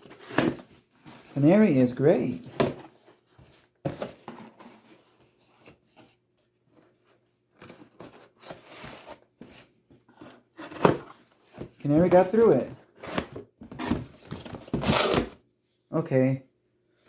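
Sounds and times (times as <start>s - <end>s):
knife cutting packaging: 12.0s - 15.4s.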